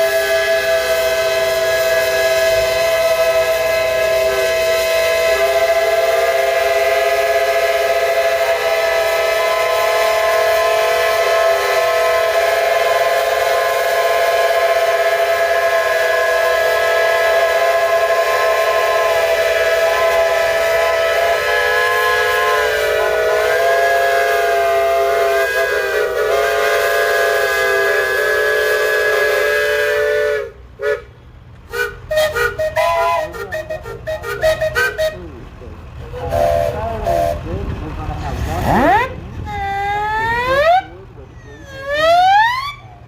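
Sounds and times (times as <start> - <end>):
steam whistles blowing a chord: 0.0 - 31.1.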